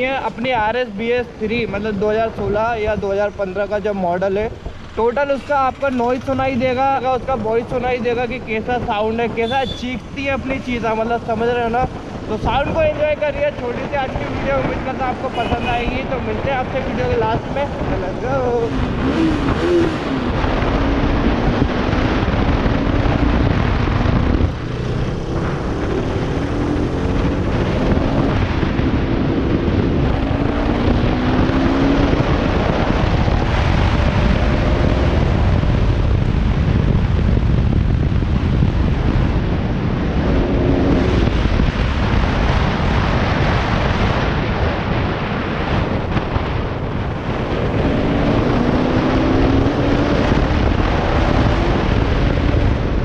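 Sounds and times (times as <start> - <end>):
wind rushing over microphone: 0.0 - 53.0
motorcycle engine revving through gears: 17.8 - 44.3, 47.0 - 53.0.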